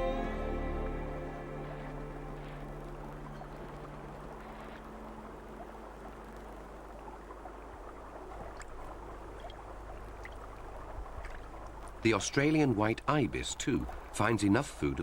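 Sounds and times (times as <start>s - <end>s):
constant low hum: 0.0s - 14.1s
water trickling and lapping: 0.0s - 15.0s.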